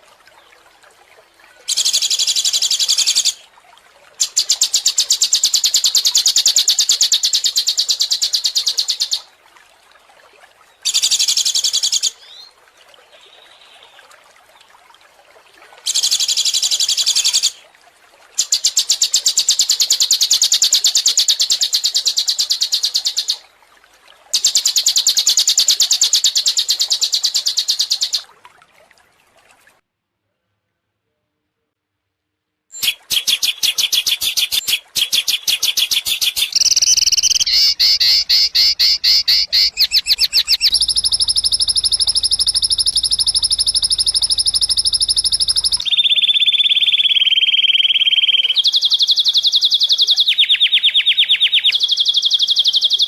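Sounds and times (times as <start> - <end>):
songbird trilling: 32.8 - 53.0.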